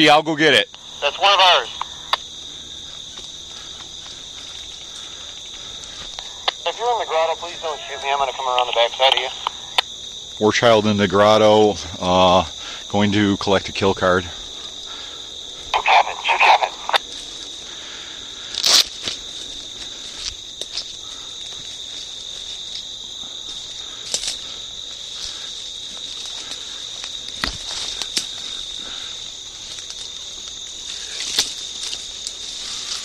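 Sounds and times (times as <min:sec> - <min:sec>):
high insect chorus: 0:00.0 - 0:33.0
sharp clicks: 0:08.0 - 0:09.9.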